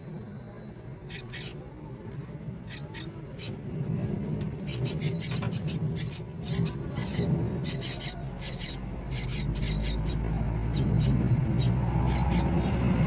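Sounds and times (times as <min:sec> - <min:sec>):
steady low rumble: 0:00.6 - 0:13.0
nestlings' squeaky begging calls: 0:01.1 - 0:01.6, 0:02.7 - 0:03.6, 0:04.6 - 0:12.6.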